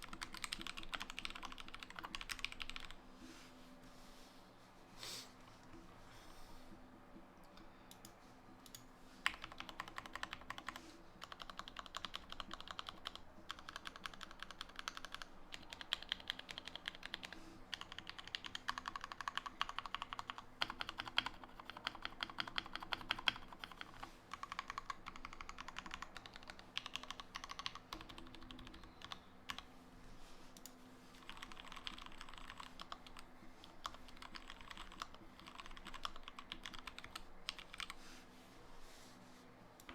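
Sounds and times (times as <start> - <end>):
mechanical keyboard typing: 0.0 - 3.0, 8.7 - 29.7, 31.2 - 33.2, 33.8 - 37.9.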